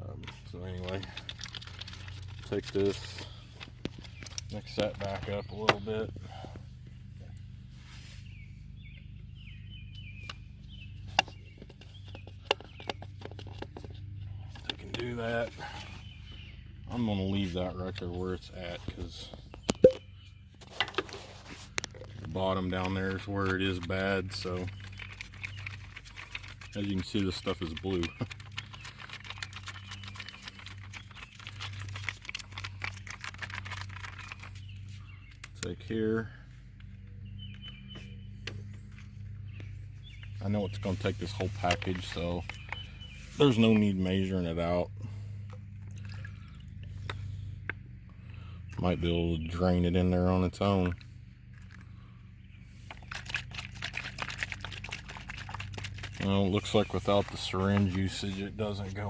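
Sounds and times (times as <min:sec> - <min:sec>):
bird chirping: 0:00.0 - 0:59.0
handling knocks and clicks: 0:10.2 - 0:15.3.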